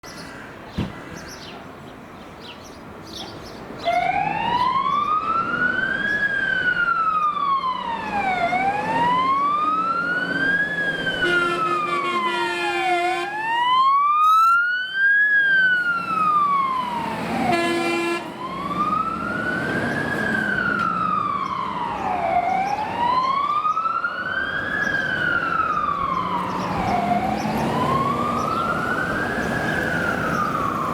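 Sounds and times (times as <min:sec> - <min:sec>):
fire engine siren wailing: 0:03.9 - 0:30.9
air horn blasts: 0:11.2 - 0:13.5, 0:17.5 - 0:18.4.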